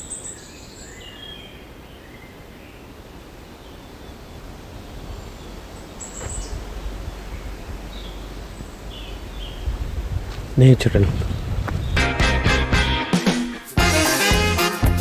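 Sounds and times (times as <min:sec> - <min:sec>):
outdoor background noise: 0:00.0 - 0:13.6
high bird chirps: 0:05.2 - 0:10.2.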